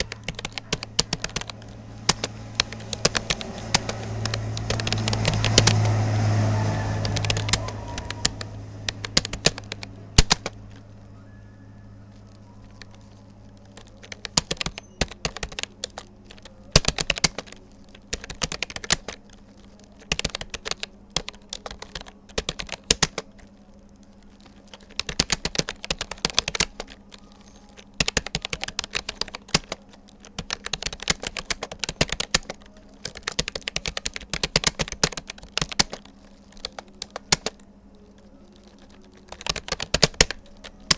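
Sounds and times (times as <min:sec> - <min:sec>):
loud low rumble: 0:00.0 - 0:16.8
keyboard keys clicking: 0:00.0 - 0:40.9
steady low hum: 0:00.0 - 0:40.9.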